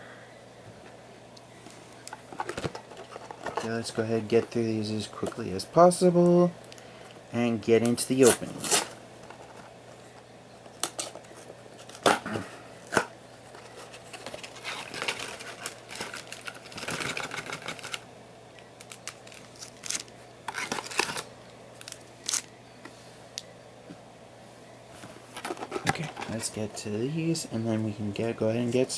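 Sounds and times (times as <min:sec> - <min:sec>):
space heater humming: 0:00.0 - 0:28.9
plastic wrap and cardboard crinkling: 0:12.9 - 0:18.0, 0:18.8 - 0:22.5.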